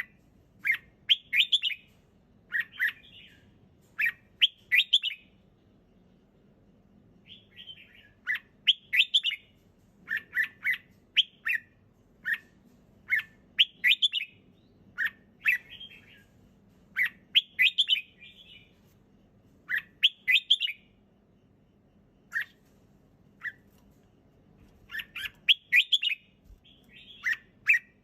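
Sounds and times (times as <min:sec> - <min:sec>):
bird singing whistled notes: 0:00.7 - 0:01.9, 0:04.0 - 0:05.3, 0:07.2 - 0:09.5, 0:10.1 - 0:12.4, 0:13.1 - 0:16.3, 0:17.0 - 0:18.8, 0:19.7 - 0:21.0, 0:24.9 - 0:28.0.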